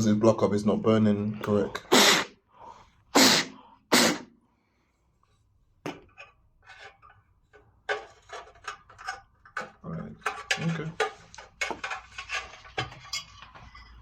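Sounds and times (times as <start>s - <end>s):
sharp puffs of air: 1.9s - 2.4s, 3.1s - 4.4s.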